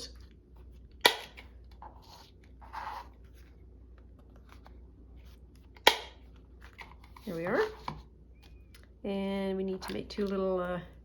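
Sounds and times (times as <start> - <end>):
paper card scraping rustle: 1.7 - 5.8.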